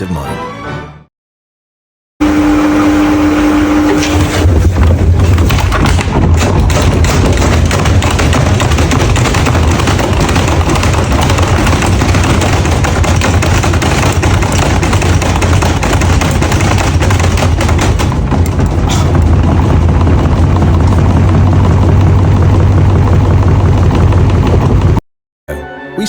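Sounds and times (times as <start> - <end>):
low motor hum: 2.2 - 25.0
washing machine clattering: 4.0 - 25.0.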